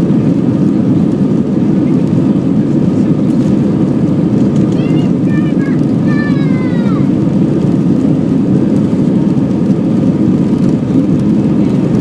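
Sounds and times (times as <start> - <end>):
jet engine rumble inside cabin: 0.0 - 12.0.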